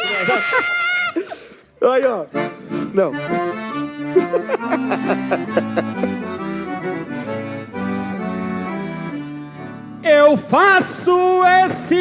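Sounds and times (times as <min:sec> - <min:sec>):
accordion playing lively melody: 0:01.2 - 0:10.8.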